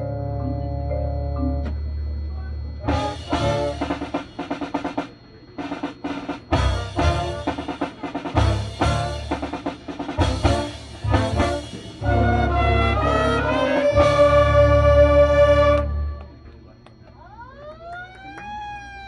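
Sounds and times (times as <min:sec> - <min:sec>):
marching band playing: 0:02.8 - 0:16.5
snare and bass drum: 0:02.9 - 0:12.4.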